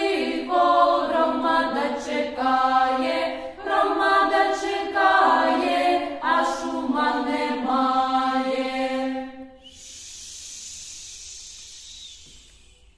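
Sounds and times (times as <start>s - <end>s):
choir singing unaccompanied: 0.0s - 9.6s
recording hiss: 8.1s - 12.9s.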